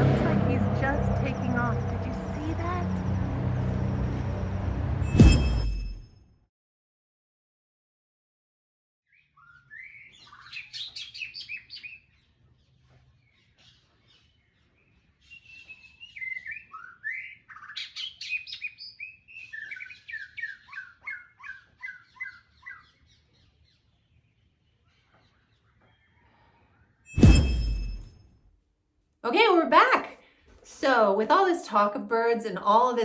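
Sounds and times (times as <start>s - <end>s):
songbird chirping: 9.1s - 26.5s.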